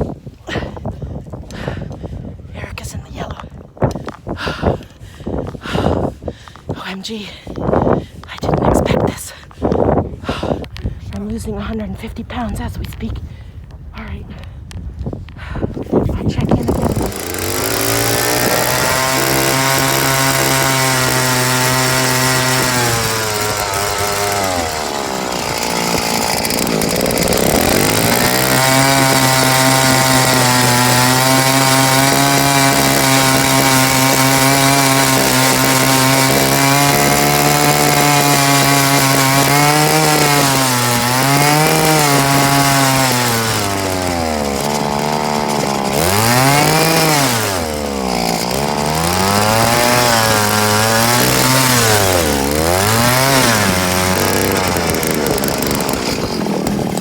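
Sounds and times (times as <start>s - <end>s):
small gas engine whining: 15.6s - 57.0s.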